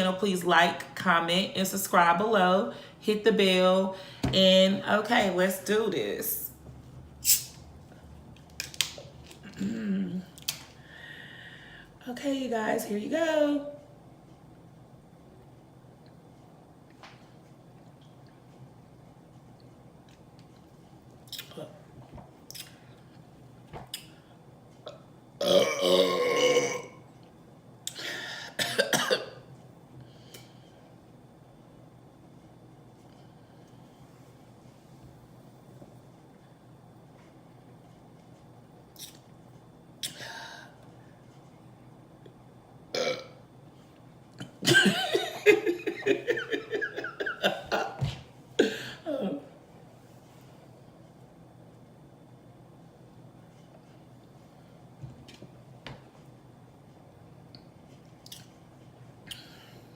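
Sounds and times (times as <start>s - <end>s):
woman burping: 9.5s - 10.2s, 24.9s - 27.0s, 27.9s - 29.3s, 42.9s - 43.4s, 48.6s - 49.5s.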